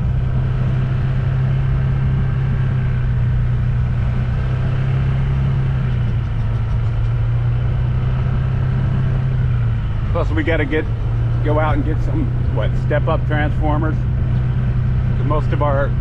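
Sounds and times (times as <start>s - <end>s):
rush of travel noise: 0.0s - 16.0s
vehicle engine humming: 0.0s - 16.0s.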